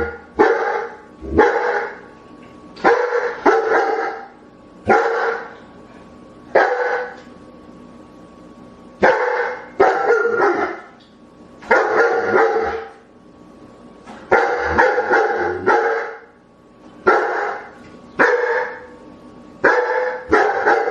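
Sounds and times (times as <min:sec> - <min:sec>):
dogs barking: 0:00.0 - 0:02.1, 0:02.8 - 0:05.6, 0:06.5 - 0:07.2, 0:09.0 - 0:11.0, 0:11.6 - 0:13.0, 0:14.2 - 0:16.4, 0:17.0 - 0:19.0, 0:19.6 - 0:20.9.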